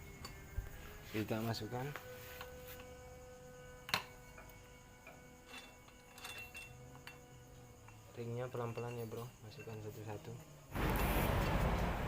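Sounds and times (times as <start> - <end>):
faint metal clinks: 0.0 - 1.0, 3.8 - 10.7.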